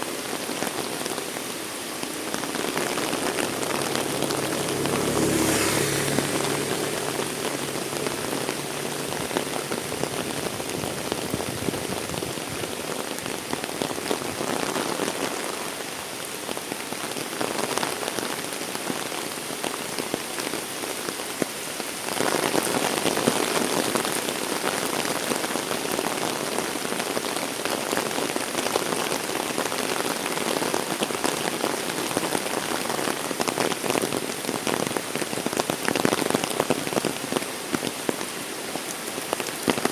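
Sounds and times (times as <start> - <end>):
heavy rain: 0.0 - 39.9.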